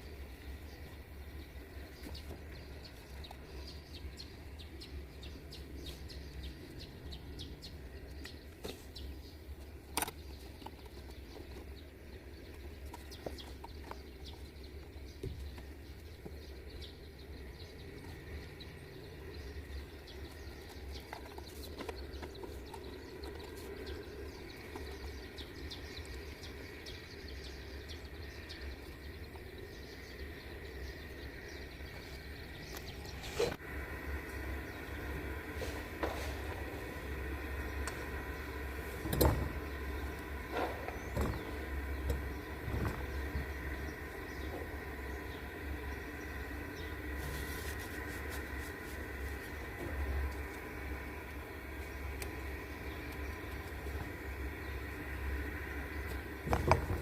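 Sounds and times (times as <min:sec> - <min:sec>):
birds chirping: 0:00.0 - 0:57.0
steady low hum: 0:00.0 - 0:57.0.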